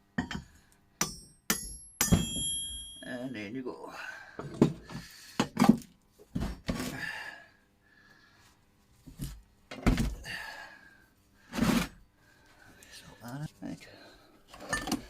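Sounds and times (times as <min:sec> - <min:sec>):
metallic ringing: 0:01.0 - 0:03.6.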